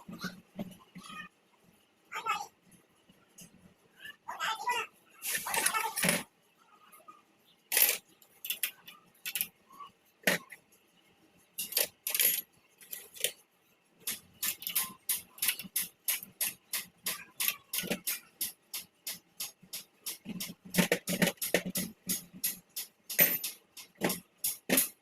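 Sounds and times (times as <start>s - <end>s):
metallic clicks of tools: 7.7s - 9.6s, 11.6s - 13.4s, 14.0s - 25.0s.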